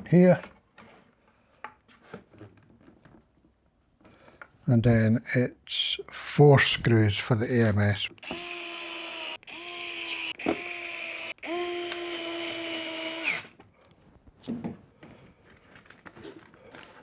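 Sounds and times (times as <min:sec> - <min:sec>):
power screwdriver whining: 0:08.2 - 0:13.6.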